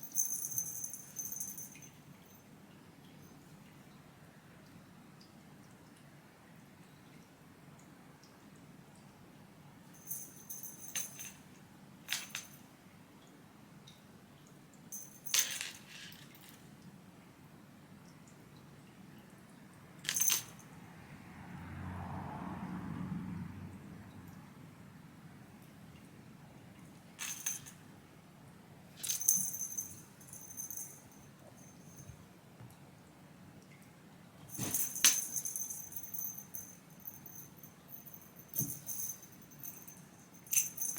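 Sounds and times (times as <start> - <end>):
small metal bell jingling: 0.0 - 2.4, 10.0 - 11.4, 14.9 - 16.1, 20.1 - 20.6, 27.2 - 27.8, 29.0 - 32.2, 34.5 - 40.9.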